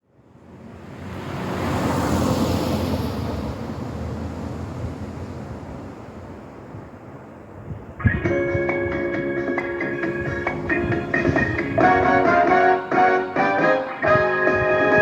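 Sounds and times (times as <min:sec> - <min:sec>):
vehicle passing by: 0:00.3 - 0:07.1.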